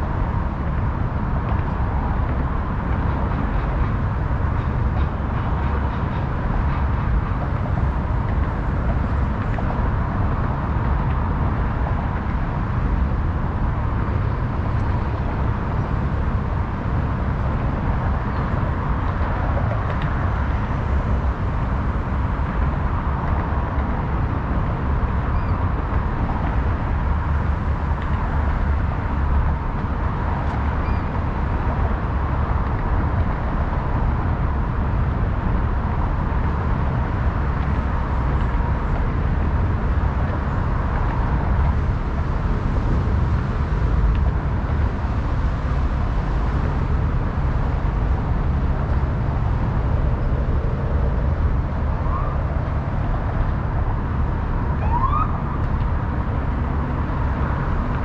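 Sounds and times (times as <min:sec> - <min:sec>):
road traffic rumble: 0:00.0 - 0:58.0
faint siren: 0:52.0 - 0:52.5, 0:54.8 - 0:55.6.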